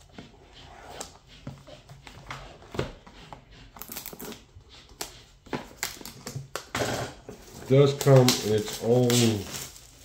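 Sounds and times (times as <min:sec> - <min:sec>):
packaging rustling: 0:07.3 - 0:10.0.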